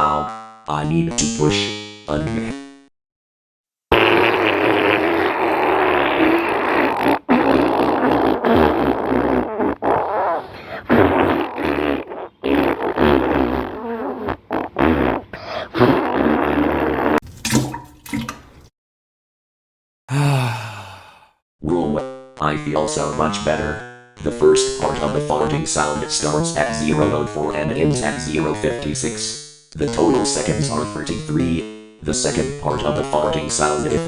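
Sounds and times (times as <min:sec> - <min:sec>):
wet sputtering fart: 0:03.9 - 0:18.7.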